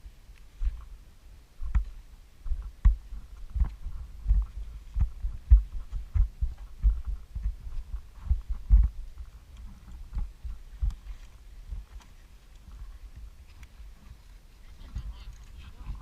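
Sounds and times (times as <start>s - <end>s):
footsteps thumping: 1.6s - 9.3s
gear rustling and clicking: 3.1s - 16.0s.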